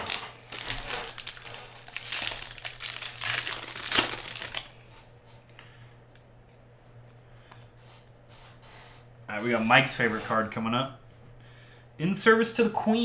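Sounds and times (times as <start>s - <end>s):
plastic wrapping crinkling: 0.0s - 5.1s.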